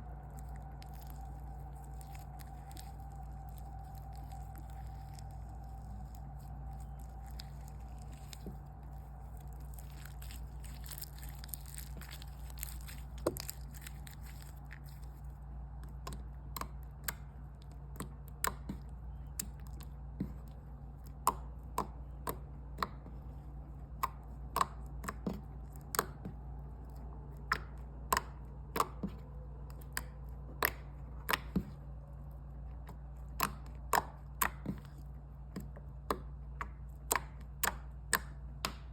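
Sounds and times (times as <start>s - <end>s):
soft crackle: 0.0s - 15.9s
steady low hum: 0.0s - 38.9s.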